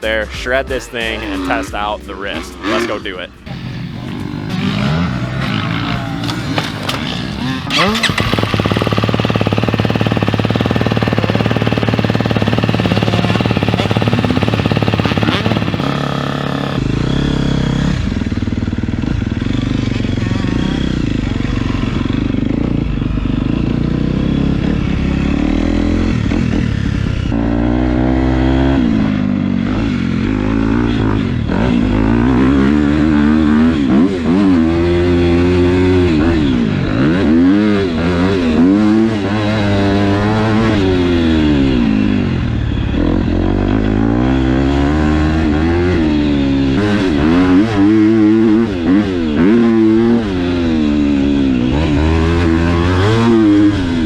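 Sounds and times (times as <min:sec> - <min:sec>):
motocross bike engine revving: 0:01.1 - 0:54.0.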